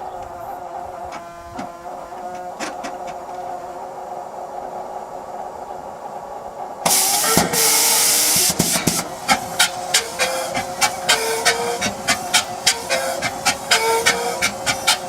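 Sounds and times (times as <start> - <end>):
engine sharp pops: 6.8 - 15.0
loud hiss: 6.8 - 15.0
helicopter engine whine: 6.9 - 15.0.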